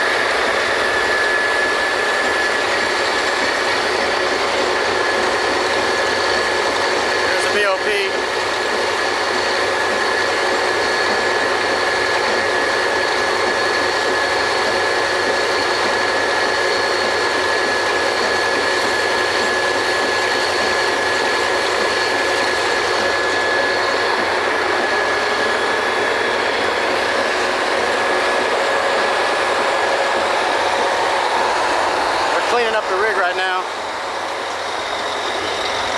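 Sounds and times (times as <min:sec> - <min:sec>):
drilling rig machinery din: 0:00.0 - 0:35.9.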